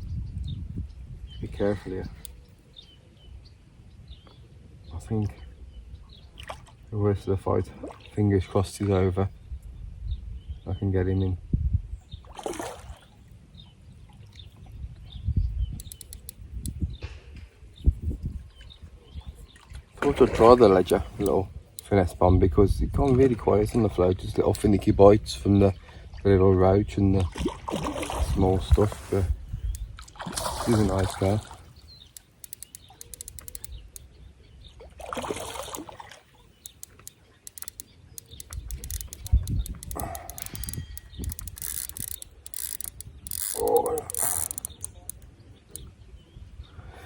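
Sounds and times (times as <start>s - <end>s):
small birds chirping: 0.0s - 47.0s
sharp clicks: 15.8s - 16.8s, 32.0s - 34.1s, 36.6s - 45.9s.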